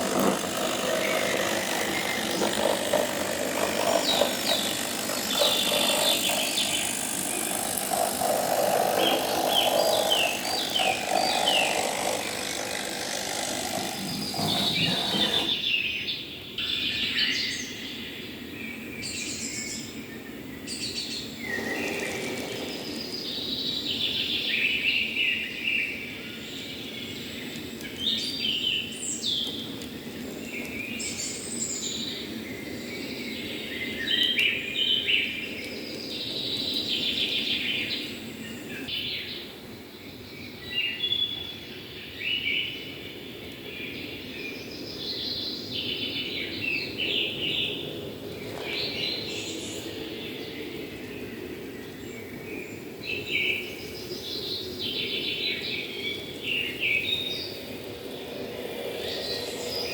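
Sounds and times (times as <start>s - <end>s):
songbirds chirping and singing: 0.0s - 18.1s, 18.7s - 39.4s.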